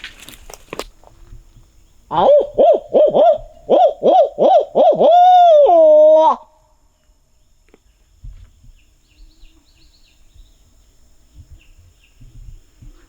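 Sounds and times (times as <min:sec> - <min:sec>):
wind rumbling on microphone: 0:00.0 - 0:03.8, 0:08.0 - 0:13.0
small bird chirping: 0:07.0 - 0:13.0.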